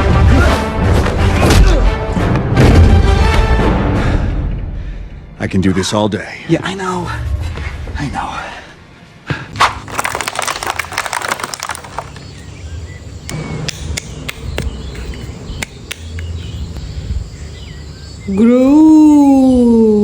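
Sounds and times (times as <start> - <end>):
plastic packaging crackling: 9.8 - 12.4.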